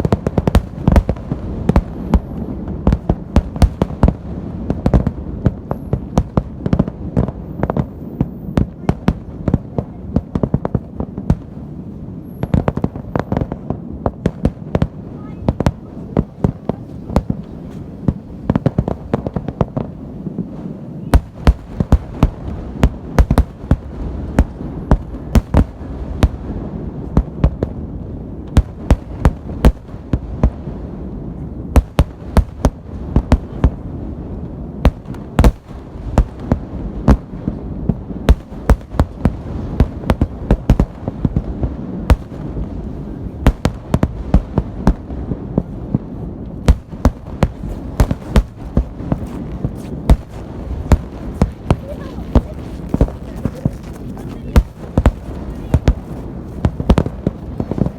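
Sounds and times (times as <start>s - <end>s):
fireworks booming: 0.0s - 57.9s
low rumble of bursts: 32.8s - 57.9s.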